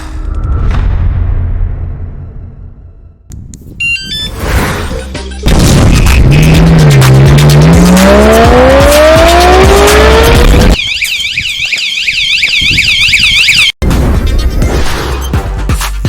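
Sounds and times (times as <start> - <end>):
loud music: 5.0 - 10.8
rising whine: 7.4 - 10.8
alarm siren warbling: 7.7 - 13.8.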